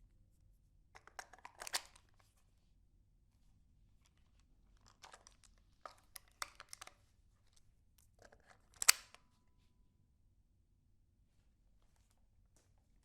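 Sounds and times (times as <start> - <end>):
rifle mechanism clicks and rattles: 1.0 - 2.0, 8.2 - 9.2.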